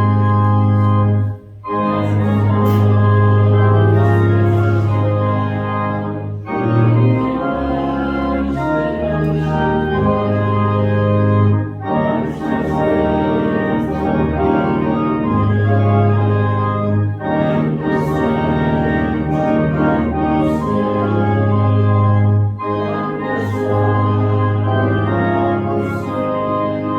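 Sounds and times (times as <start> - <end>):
organ playing hymn chords: 0.0 - 26.9.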